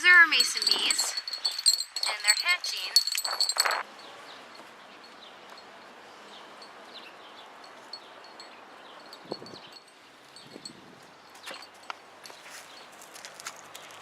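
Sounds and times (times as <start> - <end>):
high ringing notes: 0.3 - 3.8.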